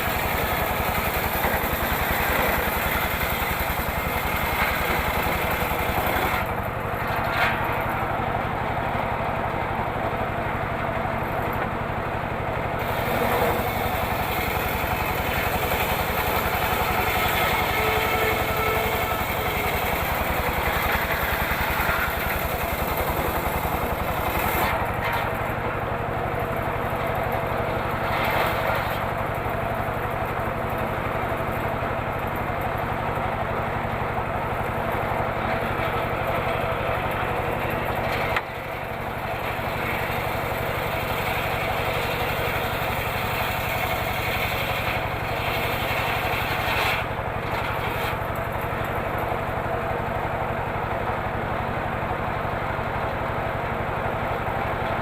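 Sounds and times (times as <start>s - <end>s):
small engine running: 0.0s - 8.9s, 12.8s - 55.0s
saw ripping through wood: 12.8s - 25.3s, 39.4s - 48.3s.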